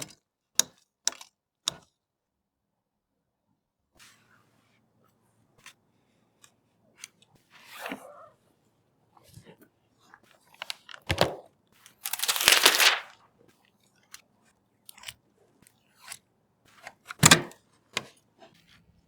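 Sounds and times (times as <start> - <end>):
small clicks: 12.1 - 13.1
rustling scrape: 12.1 - 13.2.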